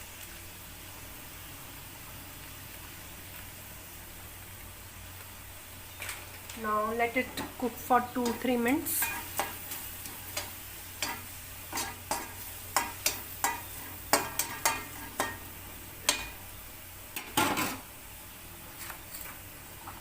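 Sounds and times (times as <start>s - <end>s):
low sizzle: 0.0s - 20.0s
utensil stirring and scraping pan: 7.2s - 16.4s.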